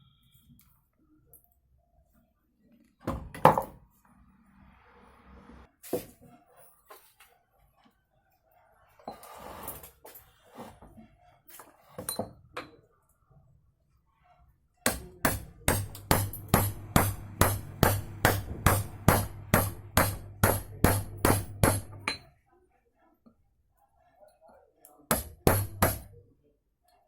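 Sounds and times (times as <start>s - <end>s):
sharp repeated knocks: 14.9s - 22.1s, 25.1s - 26.1s
steady low hum: 15.2s - 22.0s.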